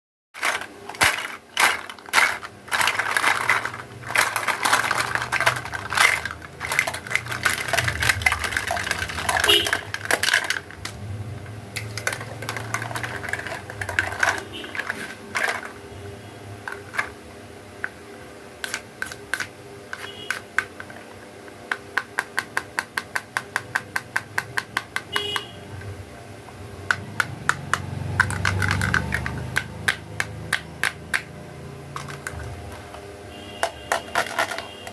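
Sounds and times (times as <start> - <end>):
plastic toy pieces clicking: 0.4 - 11.0, 11.8 - 15.8, 21.7 - 25.5, 26.9 - 31.3, 31.9 - 32.9, 33.6 - 34.9.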